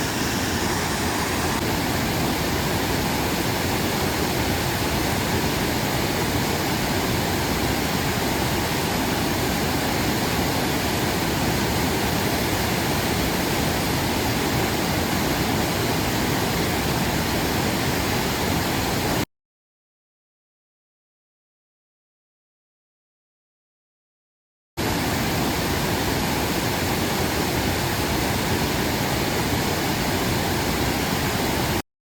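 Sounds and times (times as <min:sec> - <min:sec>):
rushing river water: 0:00.0 - 0:19.2, 0:24.8 - 0:31.8.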